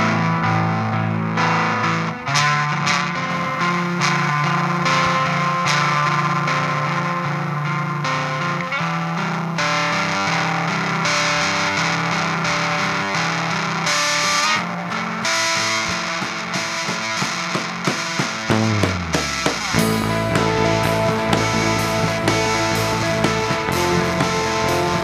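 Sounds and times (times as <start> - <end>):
distorted electric guitar chords: 0.0 - 25.0
drum hits: 15.9 - 25.0.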